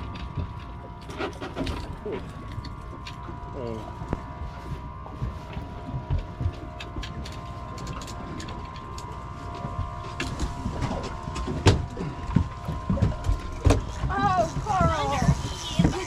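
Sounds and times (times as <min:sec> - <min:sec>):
boat engine running: 0:00.0 - 0:16.0.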